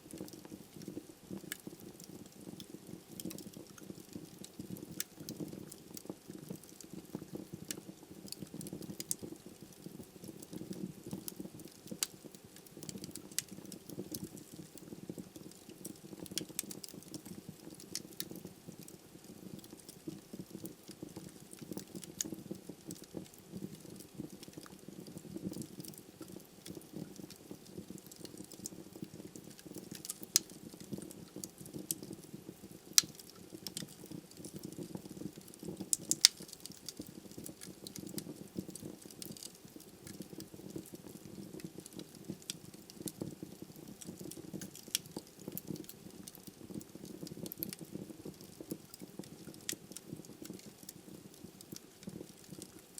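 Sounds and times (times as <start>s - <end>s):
fire popping: 0.0s - 52.9s
logs crackling: 36.0s - 37.0s.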